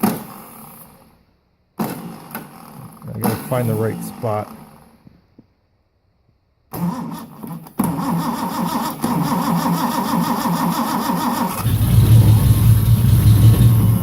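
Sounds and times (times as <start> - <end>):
starter cranking engine: 1.8 - 3.5, 6.7 - 14.0
engine running: 7.9 - 14.0.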